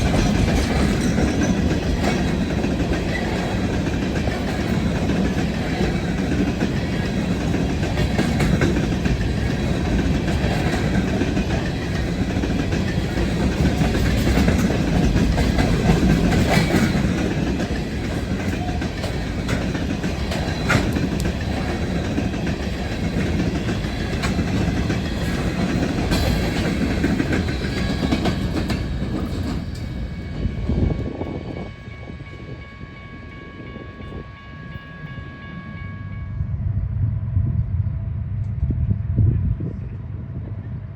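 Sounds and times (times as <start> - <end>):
train wheels clacking over rails: 0.0 - 32.6.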